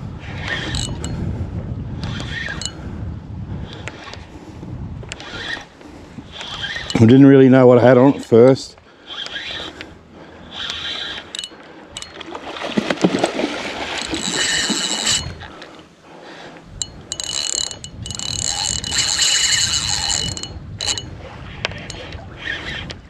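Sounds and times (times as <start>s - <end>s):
fishing reel gears whirring: 0.2s - 1.3s, 2.0s - 2.9s, 5.0s - 7.3s, 9.0s - 12.3s, 13.7s - 23.0s.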